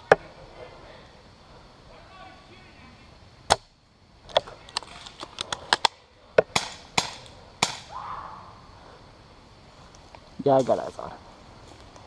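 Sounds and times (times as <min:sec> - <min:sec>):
airsoft guns firing: 0:06.4 - 0:07.9.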